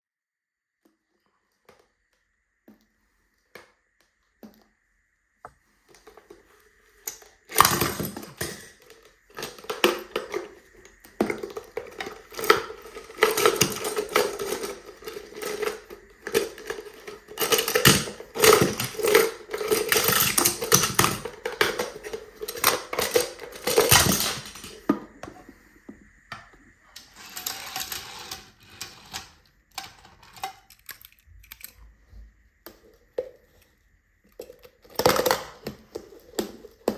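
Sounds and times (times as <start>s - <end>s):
plastic toys clattering: 5.9s - 25.2s, 27.0s - 31.8s, 34.3s - 36.9s.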